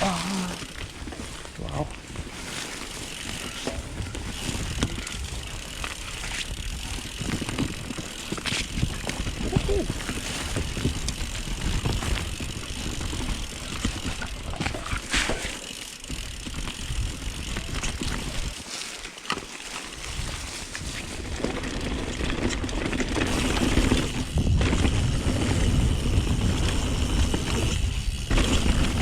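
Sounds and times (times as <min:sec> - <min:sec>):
bike rattling and clicking: 0:00.0 - 0:29.0
bike tyres on dirt trail: 0:00.0 - 0:29.0
wind rumble on microphone: 0:20.0 - 0:29.0.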